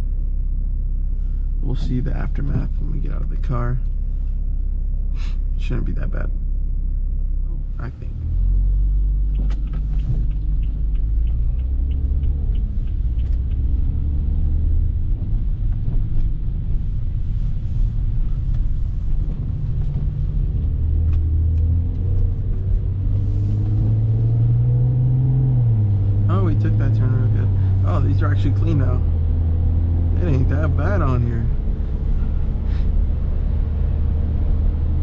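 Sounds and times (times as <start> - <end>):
car engine drone: 0.0 - 35.0
light evenly spaced ticks: 9.2 - 14.0.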